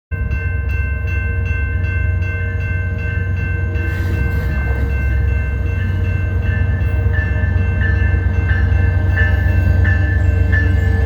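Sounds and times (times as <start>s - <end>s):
diesel locomotive engine rumble: 0.1s - 11.0s.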